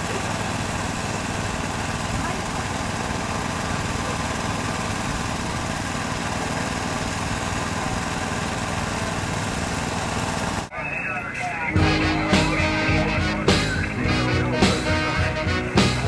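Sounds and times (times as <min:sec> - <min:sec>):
small engine running: 0:00.0 - 0:10.7.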